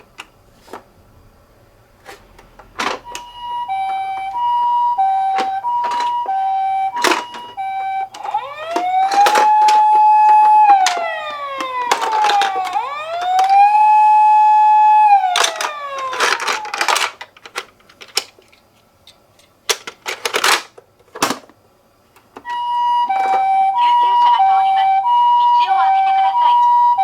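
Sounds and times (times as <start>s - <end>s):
toy siren sliding tone: 3.0s - 17.0s, 22.5s - 27.0s
two-tone ambulance siren: 3.0s - 17.1s, 22.4s - 27.0s
toy clicking and clatter: 15.0s - 20.7s.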